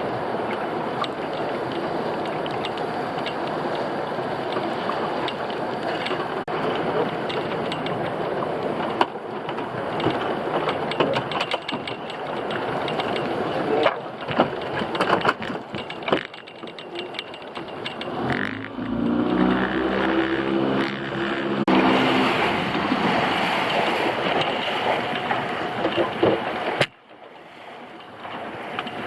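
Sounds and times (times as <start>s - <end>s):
boat engine running: 0.0s - 29.0s
knocks and clicks from deck gear: 4.5s - 18.5s.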